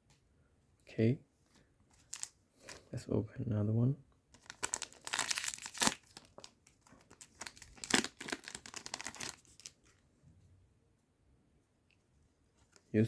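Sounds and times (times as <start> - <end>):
wrapper crinkling: 2.0 - 2.8, 4.3 - 9.8
wrapper ripping: 2.1 - 2.3, 4.4 - 9.8.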